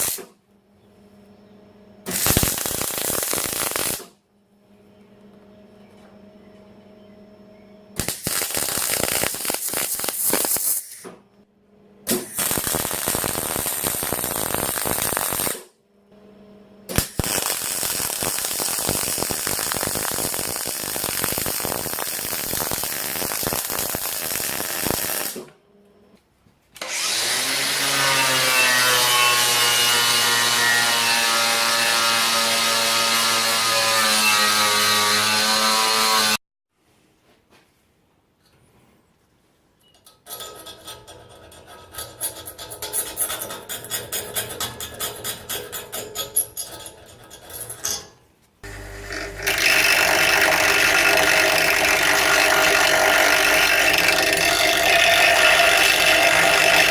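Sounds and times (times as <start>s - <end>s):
electric welding crackling: 0.0s - 0.3s, 2.1s - 4.2s, 8.0s - 11.1s, 12.1s - 15.7s, 16.9s - 25.5s, 48.6s - 56.9s
angle grinder running: 48.6s - 56.9s.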